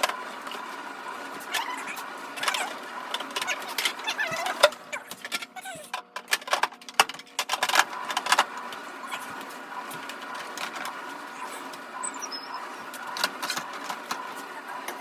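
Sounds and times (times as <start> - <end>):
items and shelves knocking and clinking: 2.4 - 8.5.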